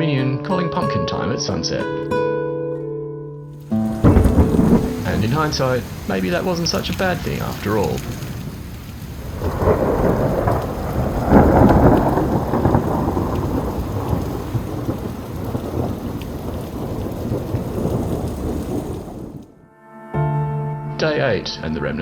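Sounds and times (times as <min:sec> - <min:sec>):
heavy rain: 0:03.6 - 0:19.5
thunder rumbling: 0:03.7 - 0:19.6.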